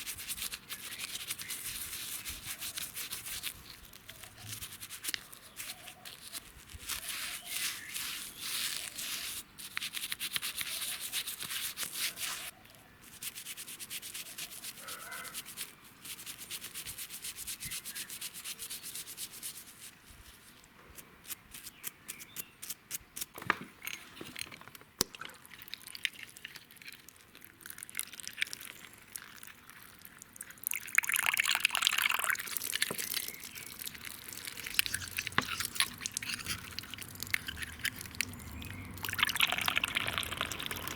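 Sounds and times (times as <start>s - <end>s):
sanding by hand: 4.4s - 12.5s, 13.1s - 19.8s.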